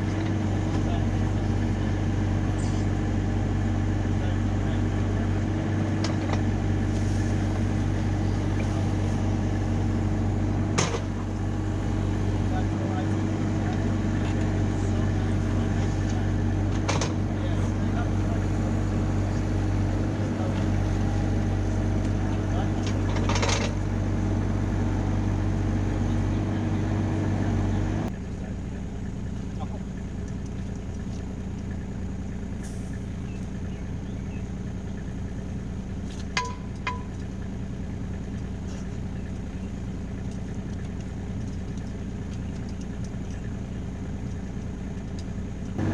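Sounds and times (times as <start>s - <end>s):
diesel engine running: 0.0s - 45.9s
light metallic clanks: 36.2s - 37.3s.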